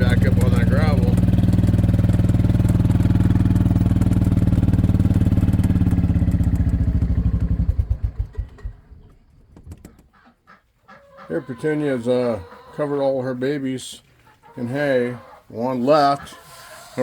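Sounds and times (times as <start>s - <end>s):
vehicle engine idling and stopping: 0.0s - 9.4s.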